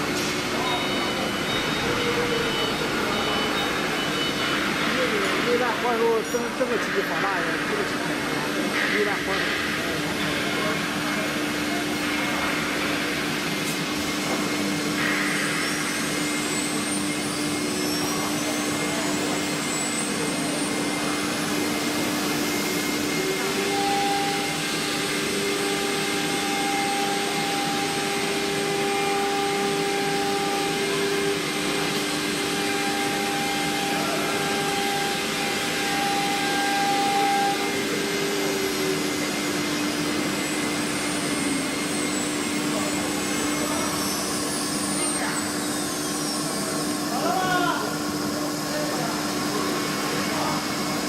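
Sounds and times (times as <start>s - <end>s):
router motor whine: 19.3s - 46.7s.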